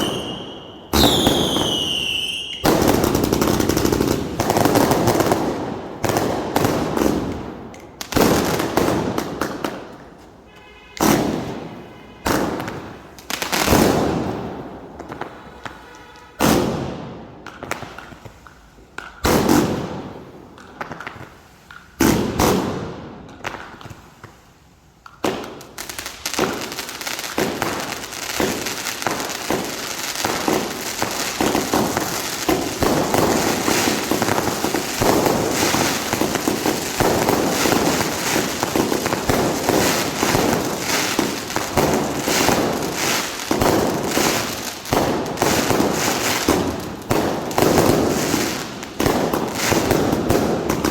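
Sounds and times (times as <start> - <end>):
rapid firework shots and crackle: 0.0 - 9.8, 22.0 - 24.0, 25.0 - 50.9
firework bangs: 0.0 - 10.0, 11.0 - 15.8, 16.4 - 18.1, 19.2 - 20.3, 22.0 - 23.7, 25.2 - 50.9.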